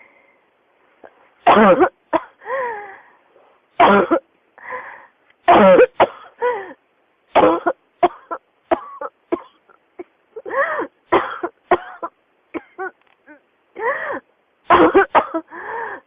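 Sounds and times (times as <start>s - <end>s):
person coughing: 1.5s - 2.4s, 3.8s - 4.2s, 5.5s - 6.4s, 7.4s - 13.4s, 14.7s - 15.5s.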